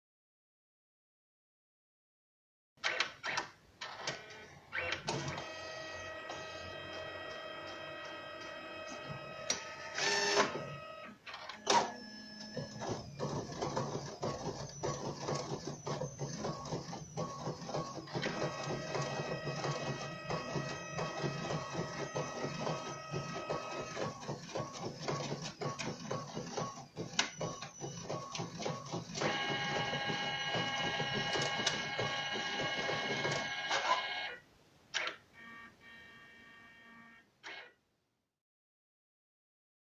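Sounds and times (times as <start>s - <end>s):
printer motors whining: 2.9s - 34.4s
printer clacks: 11.7s - 34.0s
rapid printer clicking: 11.7s - 34.0s.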